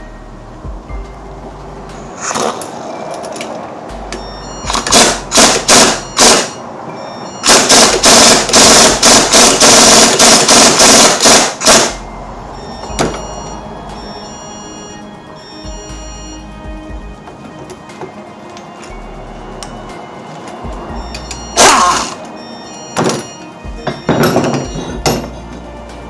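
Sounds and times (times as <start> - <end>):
pneumatic air tool hammering: 4.7 - 6.6, 7.4 - 12.0, 21.6 - 22.2.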